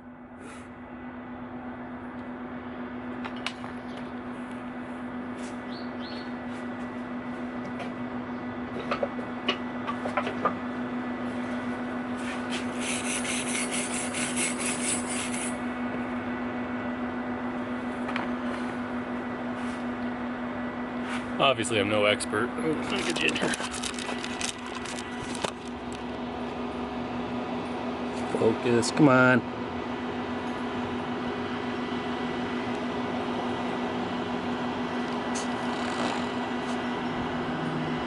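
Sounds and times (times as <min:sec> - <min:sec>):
welder humming: 0:03.0 - 0:38.0
crackling weld arc: 0:22.8 - 0:26.0.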